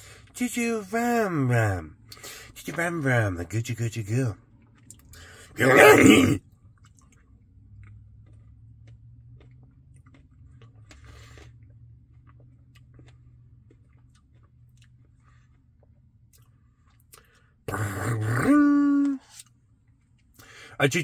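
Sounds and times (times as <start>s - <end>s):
soft chewing: 4.4s - 20.6s.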